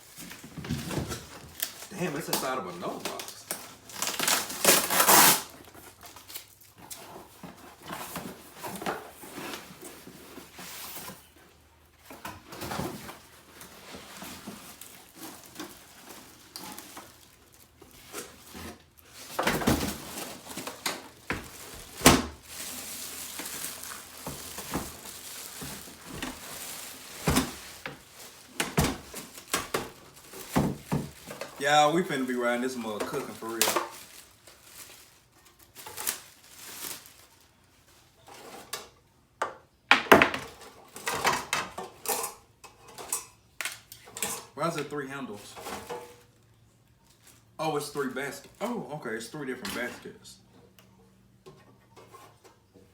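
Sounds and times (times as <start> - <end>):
cardboard rustling and scraping: 0.0 - 38.9, 51.6 - 52.9.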